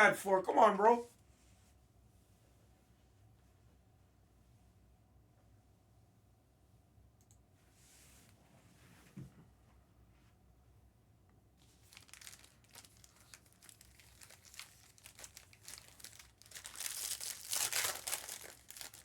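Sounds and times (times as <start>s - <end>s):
wrappers tearing and crumpling: 11.6s - 19.0s.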